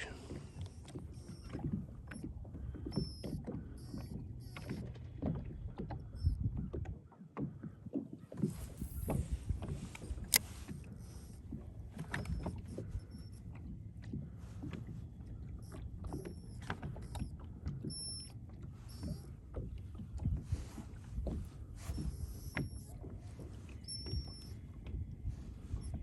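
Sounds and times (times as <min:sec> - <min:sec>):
faint high beeps: 0:00.0 - 0:04.9, 0:06.0 - 0:06.4, 0:12.0 - 0:13.5, 0:15.5 - 0:19.3, 0:23.7 - 0:24.8, 0:25.7 - 0:26.0.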